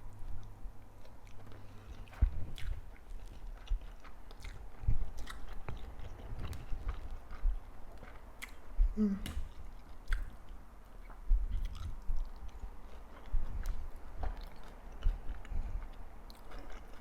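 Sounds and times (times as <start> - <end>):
person chewing food: 0.1 - 17.0
low thuds: 2.1 - 2.8
wet mouth clicks: 9.2 - 10.4.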